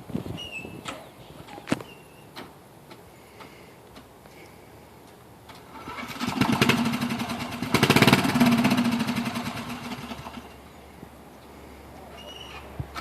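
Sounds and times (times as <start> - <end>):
engine running with fast pulse: 5.7 - 10.6.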